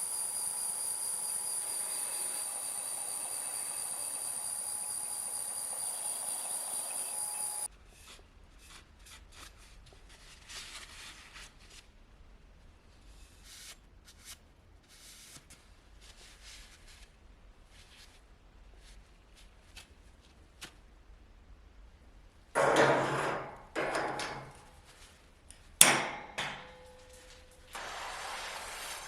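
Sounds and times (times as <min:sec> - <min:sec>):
high-pitched machine whine: 0:00.0 - 0:07.7
scraping and rubbing strokes: 0:26.9 - 0:29.0.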